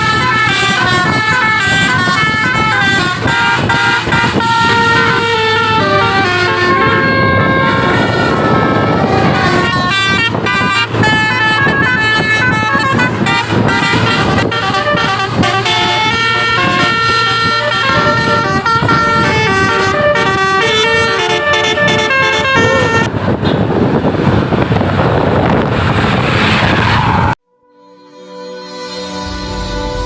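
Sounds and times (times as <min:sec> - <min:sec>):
musical bus horn tune: 0:00.0 - 0:23.1, 0:27.4 - 0:30.0
rushing noise: 0:21.8 - 0:27.4, 0:28.8 - 0:30.0.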